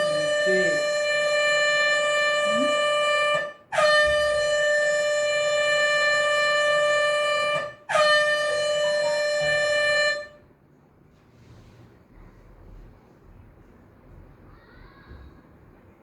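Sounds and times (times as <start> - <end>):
air horn blasts: 0.0 - 10.5.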